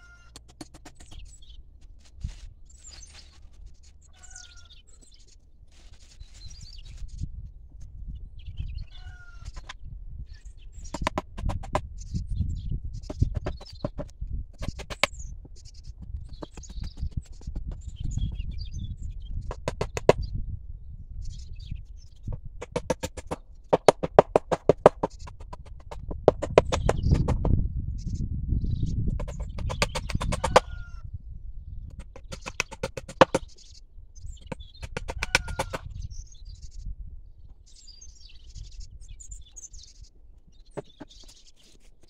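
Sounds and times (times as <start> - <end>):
farm animals calling: 0.0 - 0.4, 2.8 - 5.2, 8.8 - 9.8, 30.0 - 31.1, 35.0 - 35.9
small birds chirping: 0.0 - 42.0
low wind rumble: 1.1 - 40.7.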